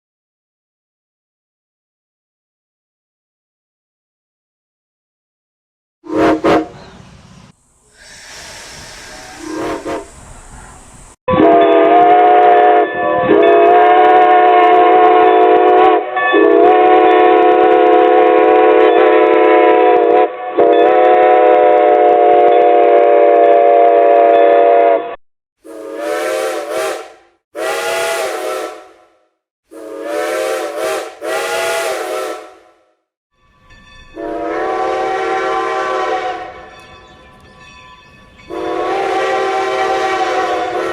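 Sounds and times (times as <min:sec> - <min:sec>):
steam locomotive whistle: 0:06.0 - 0:07.0, 0:07.9 - 0:32.9, 0:34.2 - 0:36.9, 0:38.5 - 0:40.9
steam hissing: 0:06.3 - 0:11.2.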